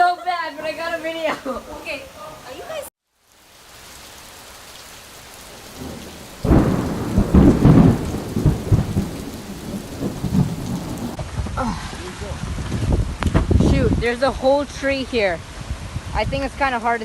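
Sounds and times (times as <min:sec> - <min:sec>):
heavy rain hissing: 0:00.0 - 0:17.0
wind gusts buffeting microphone: 0:05.8 - 0:17.0.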